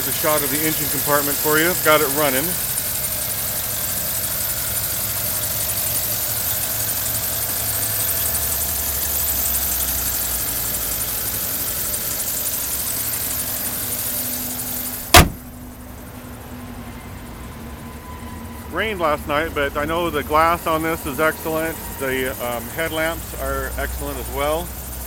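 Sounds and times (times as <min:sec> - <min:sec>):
car engine idling: 0:00.0 - 0:16.3, 0:18.7 - 0:25.0
loud thump: 0:15.0 - 0:15.6.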